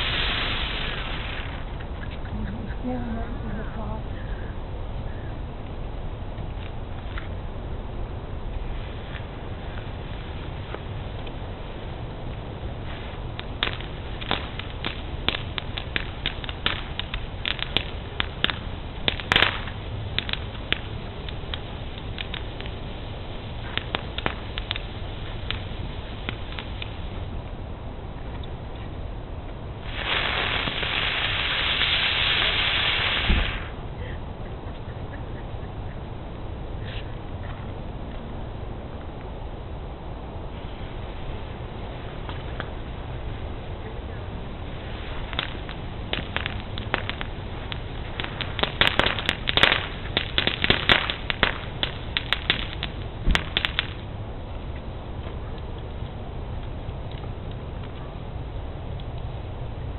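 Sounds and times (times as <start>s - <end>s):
firework hissing: 0.0s - 4.5s, 8.5s - 27.4s, 29.8s - 34.2s, 40.4s - 54.1s.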